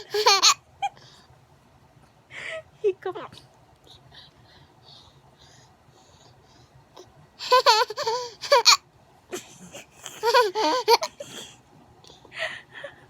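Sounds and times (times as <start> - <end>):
baby laughing: 0.0 - 0.6, 7.4 - 8.8, 9.4 - 11.3.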